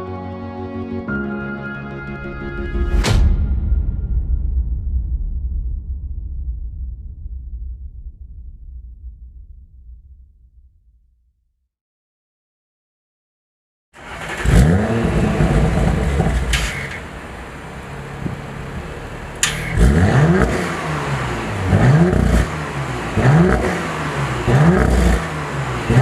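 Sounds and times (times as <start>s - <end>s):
car engine revving: 14.0s - 26.0s
exhaust cracks: 14.0s - 26.0s.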